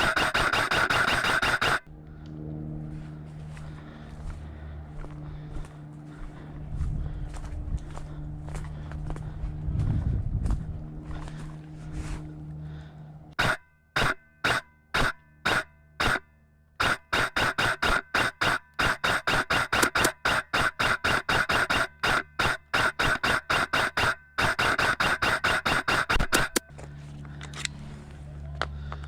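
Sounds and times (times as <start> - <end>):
airsoft gun shots: 0.0 - 1.9, 13.4 - 26.7.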